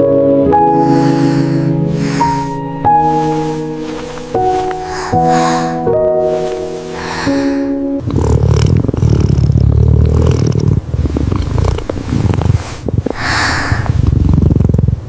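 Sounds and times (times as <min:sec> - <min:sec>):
musical tone: 0:00.0 - 0:08.0
breathy sound: 0:00.5 - 0:09.6, 0:10.8 - 0:14.1
cat purring loudly: 0:00.7 - 0:15.0.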